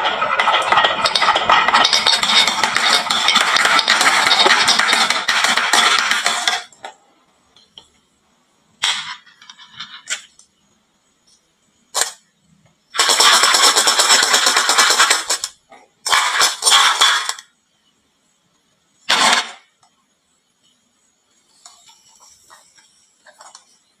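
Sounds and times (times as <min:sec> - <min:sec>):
marbles clattering down wooden run: 0:00.0 - 0:06.7.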